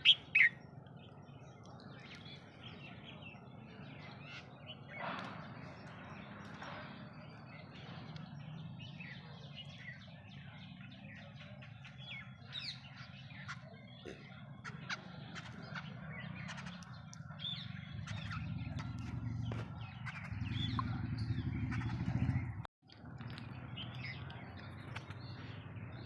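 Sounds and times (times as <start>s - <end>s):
small birds chirping: 0.0s - 26.0s
low rumble: 17.2s - 26.0s.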